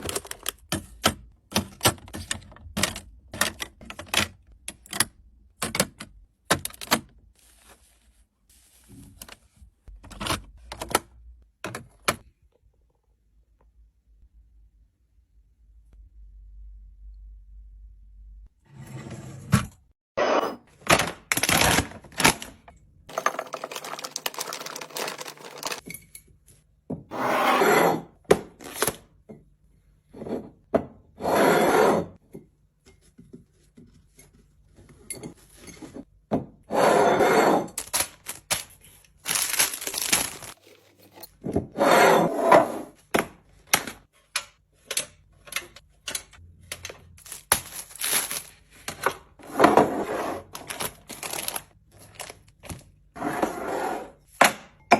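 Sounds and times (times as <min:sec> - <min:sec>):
rustling or pouring bursts: 0:23.1 - 0:25.8.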